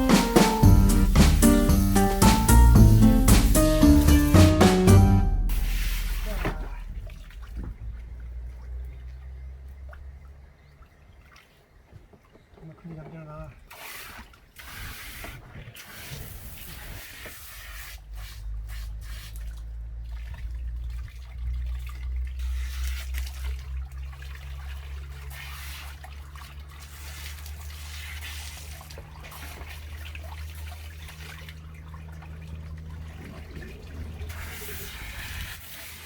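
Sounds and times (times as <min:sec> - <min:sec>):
water running and trickling: 0:05.4 - 0:36.0.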